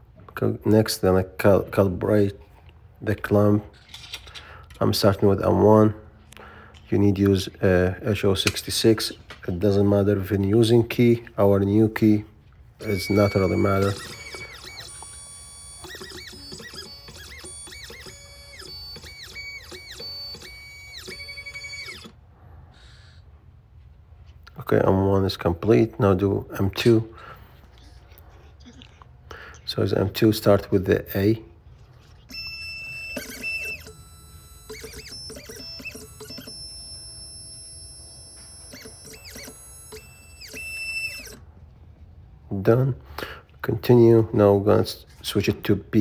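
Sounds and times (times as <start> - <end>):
stepper motors whining: 12.8 - 22.2, 32.0 - 41.4.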